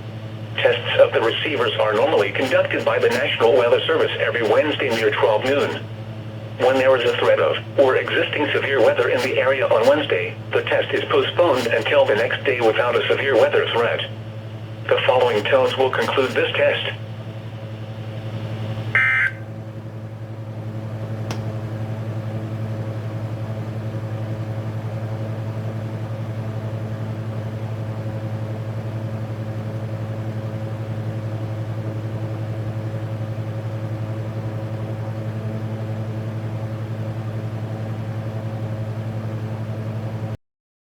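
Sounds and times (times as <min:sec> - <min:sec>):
steady low hum: 0:00.0 - 0:40.4
digital data tones: 0:00.9 - 0:05.9, 0:06.6 - 0:14.1
single click: 0:21.3 - 0:21.5.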